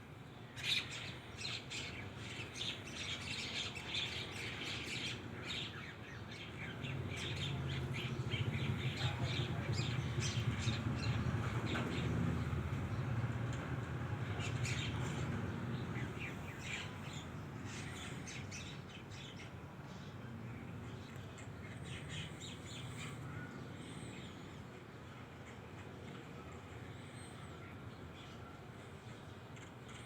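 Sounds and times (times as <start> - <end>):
birds chirping and calling: 0.6 - 29.0.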